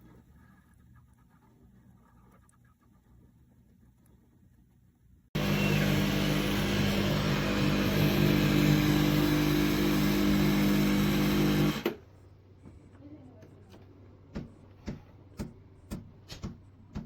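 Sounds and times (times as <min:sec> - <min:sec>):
espresso machine motor hum: 0:05.4 - 0:12.0.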